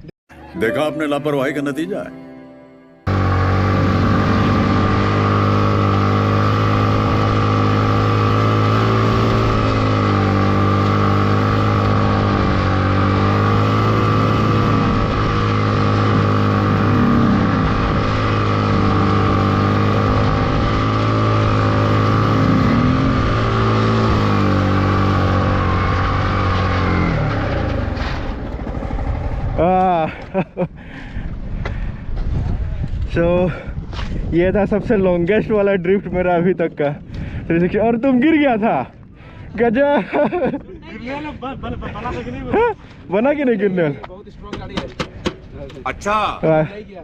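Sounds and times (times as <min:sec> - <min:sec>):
motorcycle engine revving high: 0:03.1 - 0:29.9.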